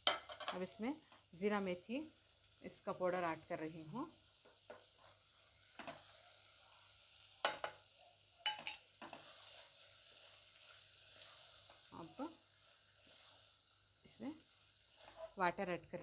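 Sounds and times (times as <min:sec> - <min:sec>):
spoon knocking against pan: 0:00.0 - 0:00.7, 0:07.4 - 0:07.8, 0:08.4 - 0:09.2
food sizzling in oil: 0:00.0 - 0:16.0.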